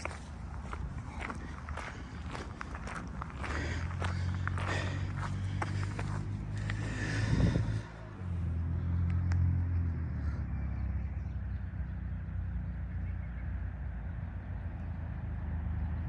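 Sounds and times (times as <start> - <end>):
low rumble: 0.0 - 11.2.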